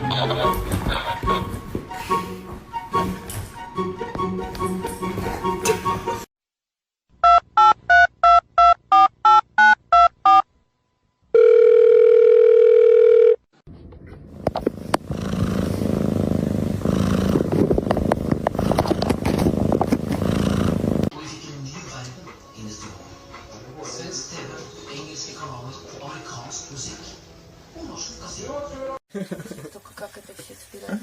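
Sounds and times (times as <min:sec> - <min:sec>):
steady telephone tone: 0:11.3 - 0:13.5
crackling rustling noise: 0:17.0 - 0:21.1.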